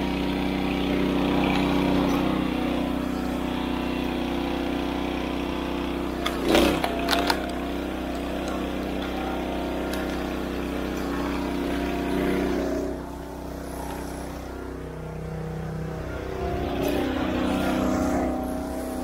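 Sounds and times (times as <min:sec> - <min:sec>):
small gasoline engine running: 0:00.0 - 0:19.0.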